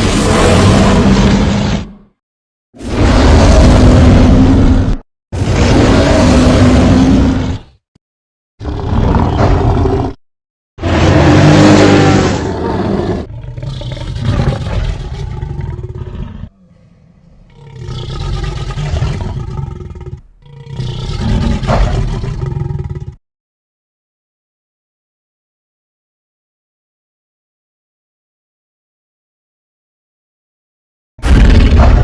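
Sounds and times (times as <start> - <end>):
dinosaur roars: 0.0 - 2.0, 2.8 - 7.7, 8.6 - 10.2, 10.8 - 23.2.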